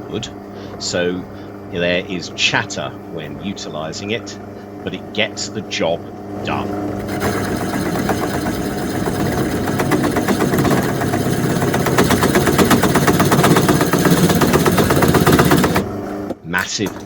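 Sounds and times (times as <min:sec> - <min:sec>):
drill press motor hum: 0:00.0 - 0:17.0.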